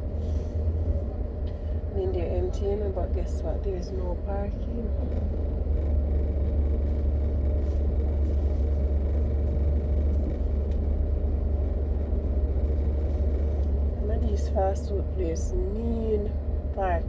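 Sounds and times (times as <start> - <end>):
car engine idling: 0.0 - 17.0
faint constant hum: 0.0 - 17.0.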